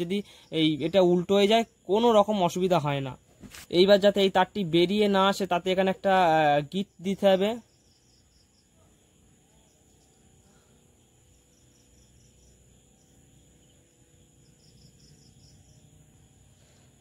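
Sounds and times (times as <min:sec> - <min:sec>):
faint cricket chirping: 0:00.0 - 0:17.0.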